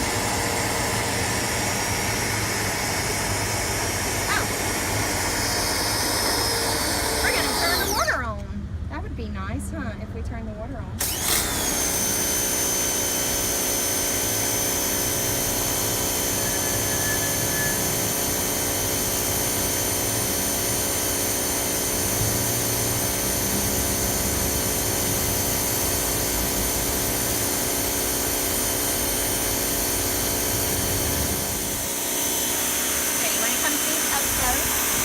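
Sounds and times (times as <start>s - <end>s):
pressure washer motor whine: 0.0s - 8.3s, 11.0s - 35.0s.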